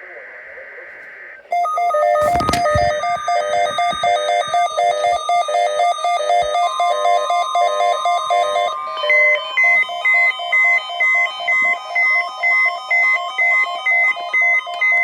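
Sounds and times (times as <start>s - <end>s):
synthesized alert beeps: 1.5s - 10.8s
steady high tone: 1.5s - 15.0s.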